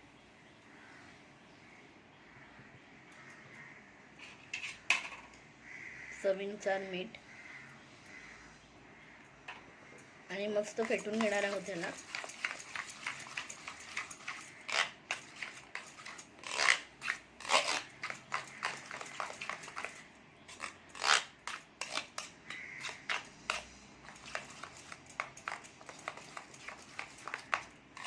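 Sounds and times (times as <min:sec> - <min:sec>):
eggs being beaten in a bowl: 0:10.6 - 0:16.4, 0:18.0 - 0:20.8, 0:21.5 - 0:27.8.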